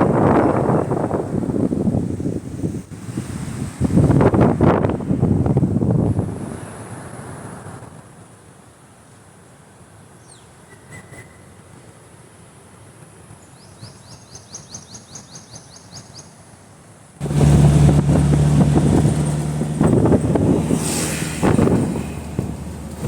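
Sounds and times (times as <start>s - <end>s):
birds chirping: 13.6s - 16.4s
loud vehicle drone: 17.2s - 23.0s
rushing noise: 17.2s - 23.0s.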